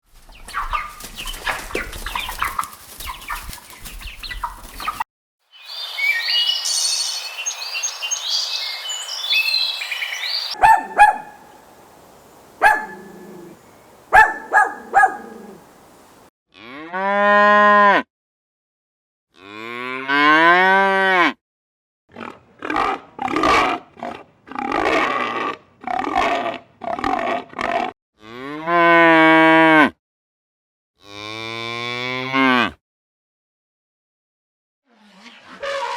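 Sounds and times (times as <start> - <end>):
dense high chirping: 10.4 - 16.2
cattle mooing: 10.6 - 11.8, 12.6 - 17.2.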